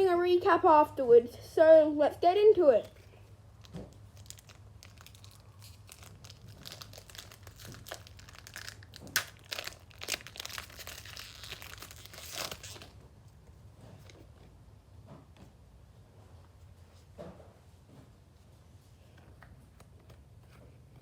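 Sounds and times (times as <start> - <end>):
foil wrapper crinkling and tearing: 3.6 - 13.0.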